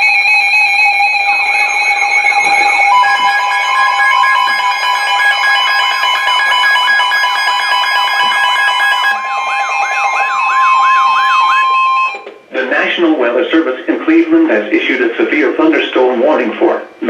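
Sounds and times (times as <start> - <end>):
pulsing beeps: 0.0 - 12.3
warbling siren-like tone: 0.0 - 12.5
steady warning tone: 0.0 - 17.0.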